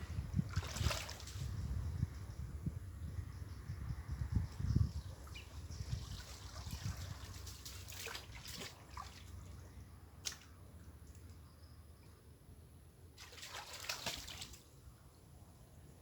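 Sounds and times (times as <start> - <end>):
small water splashes: 0.3 - 1.6, 5.1 - 11.3, 13.2 - 14.8
water trickling and dripping: 4.5 - 11.4.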